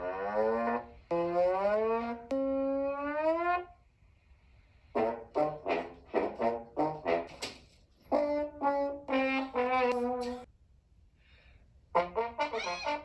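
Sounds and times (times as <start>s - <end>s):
choppy trombone blasts: 0.0s - 3.8s, 4.9s - 10.5s, 11.9s - 13.0s
trombone sliding notes: 0.0s - 3.8s, 4.9s - 7.4s, 8.0s - 10.5s, 11.9s - 13.0s.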